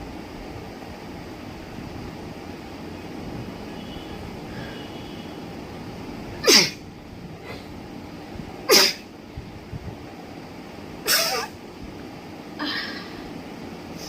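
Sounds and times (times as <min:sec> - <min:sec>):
woman sneezing: 0:06.4 - 0:06.8, 0:08.7 - 0:09.0, 0:11.1 - 0:11.5.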